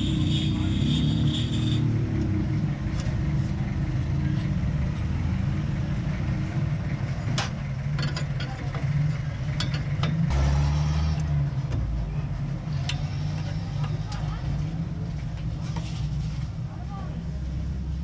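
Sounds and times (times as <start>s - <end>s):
diesel engine idling: 1.9s - 10.3s.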